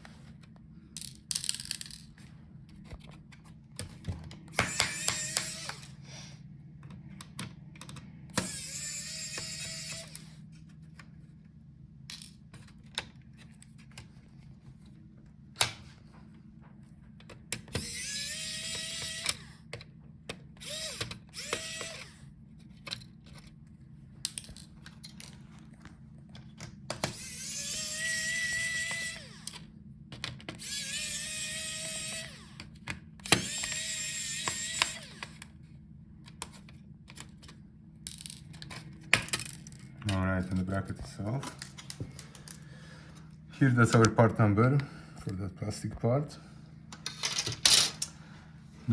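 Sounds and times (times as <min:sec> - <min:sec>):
electric screwdriver whining: 0:04.5 - 0:06.0, 0:08.3 - 0:10.4, 0:17.6 - 0:19.7, 0:20.6 - 0:22.3, 0:27.0 - 0:29.7, 0:30.5 - 0:35.5
small clicks of screws: 0:17.2 - 0:22.2, 0:30.2 - 0:35.5.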